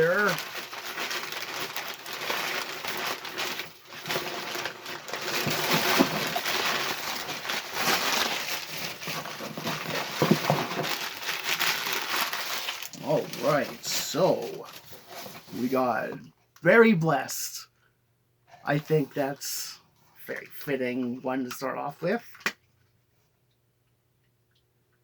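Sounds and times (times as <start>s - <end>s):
crinkling paper and plastic wrapping: 0.0s - 15.8s.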